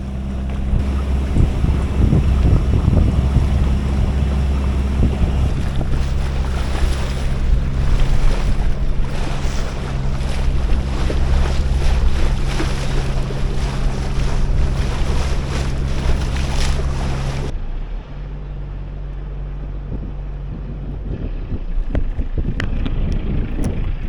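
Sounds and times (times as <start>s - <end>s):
wind buffeting microphone: 0.0s - 17.5s, 19.6s - 24.0s
water rushing past: 0.0s - 18.1s
boat engine running: 0.0s - 24.0s.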